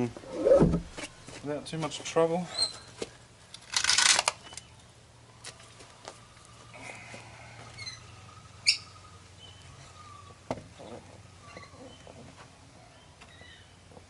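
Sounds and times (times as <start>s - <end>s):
faint bird chirps: 6.2s - 13.8s.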